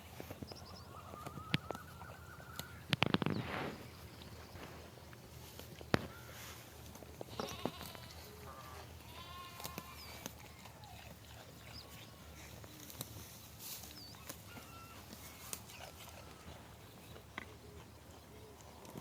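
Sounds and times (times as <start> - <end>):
goats bleating: 7.2 - 10.4.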